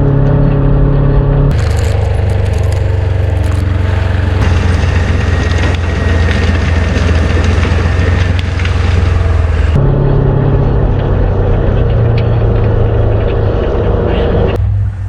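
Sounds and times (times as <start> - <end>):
sharp cracks and clatter: 1.5 - 9.8
bulldozer diesel engine running: 1.5 - 15.0.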